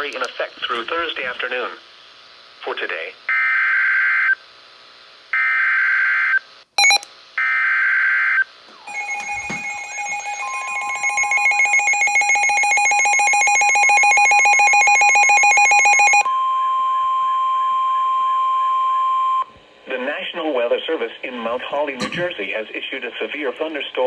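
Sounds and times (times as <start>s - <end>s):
steady warning tone: 8.7s - 16.3s
rapidly pulsing alarm beep: 8.8s - 16.2s.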